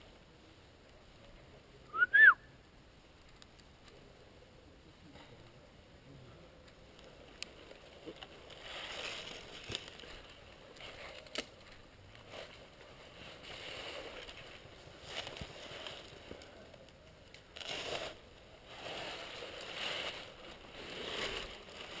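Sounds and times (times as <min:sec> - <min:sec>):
faint rustling: 0:06.6 - 0:22.0.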